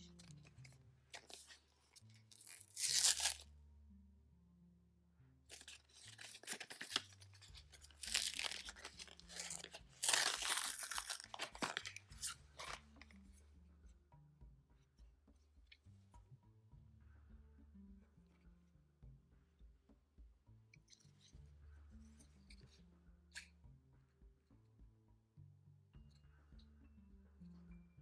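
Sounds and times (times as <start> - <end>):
soft background music: 0.0 - 28.0
packaging tearing and crinkling: 1.2 - 1.6, 2.3 - 3.4, 5.5 - 12.8.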